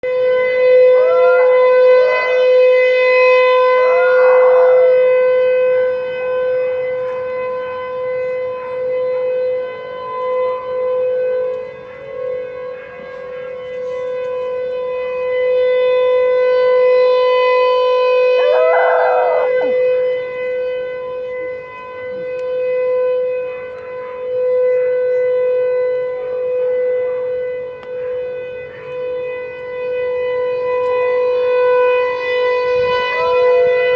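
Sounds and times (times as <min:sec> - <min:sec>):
warning siren steady tone: 0:00.0 - 0:33.9
siren wails rising and falling: 0:00.1 - 0:06.7, 0:14.8 - 0:20.5, 0:29.9 - 0:33.9.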